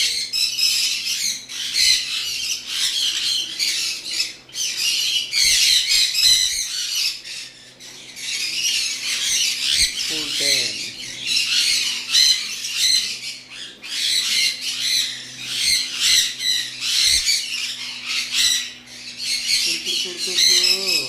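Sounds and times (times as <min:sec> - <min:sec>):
parrots squawking: 0:00.0 - 0:21.0.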